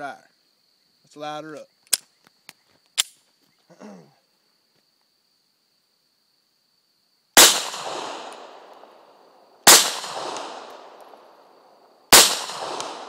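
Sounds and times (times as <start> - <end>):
pistol shots with echo: 7.4 - 11.5, 12.1 - 13.0.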